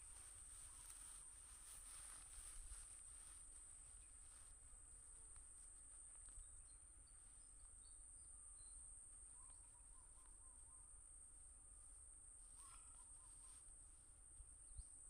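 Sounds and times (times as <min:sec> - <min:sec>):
faint bird chirps: 0:06.1 - 0:13.9.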